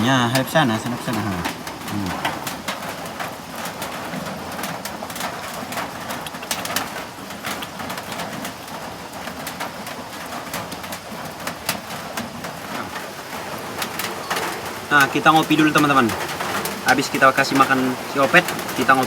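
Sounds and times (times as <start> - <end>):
rain falling: 0.0 - 19.0
sharp drips and ticks: 0.0 - 19.0
bird calling: 12.8 - 19.0.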